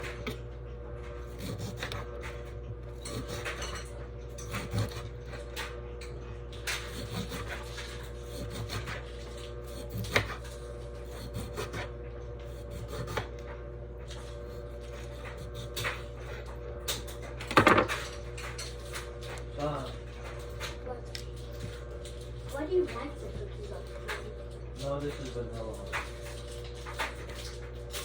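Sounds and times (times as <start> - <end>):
steady low hum: 0.0 - 28.0
knife slicing on cutting board: 1.3 - 2.4, 6.7 - 11.9, 12.5 - 13.3.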